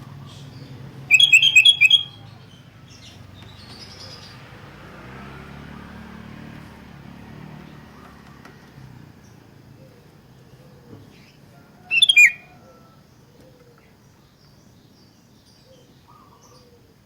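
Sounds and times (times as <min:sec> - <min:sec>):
bulbul calling: 0:00.0 - 0:04.4, 0:09.8 - 0:12.5.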